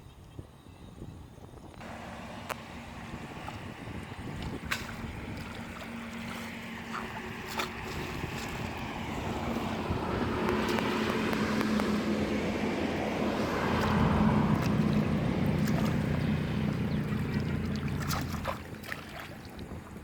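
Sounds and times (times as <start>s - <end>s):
small engine running: 1.8s - 18.8s.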